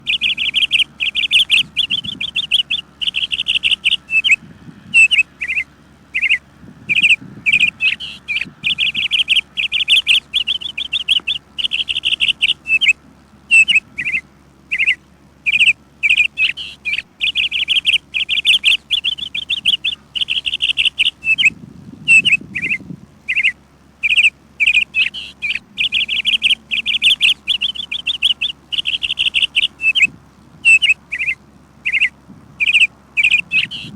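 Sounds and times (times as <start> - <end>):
birds chirping: 0.0 - 33.9.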